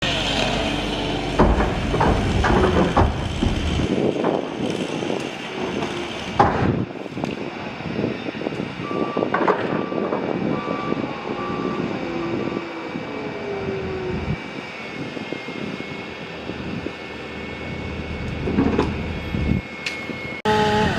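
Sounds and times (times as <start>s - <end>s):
heavy knocks and thumps: 1.4s - 4.4s
low rumble: 1.4s - 7.9s
reversing alarm beeps: 8.2s - 20.9s.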